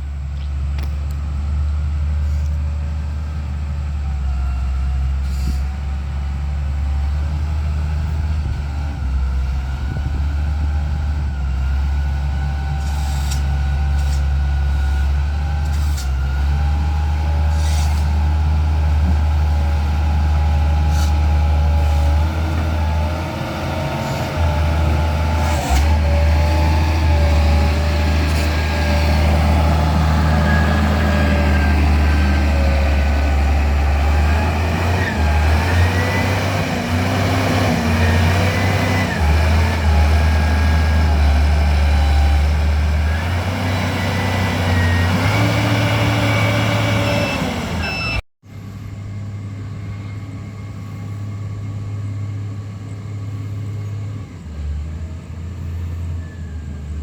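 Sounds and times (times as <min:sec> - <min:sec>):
diesel engine running: 0:00.0 - 0:57.0
short hisses: 0:17.5 - 0:18.2.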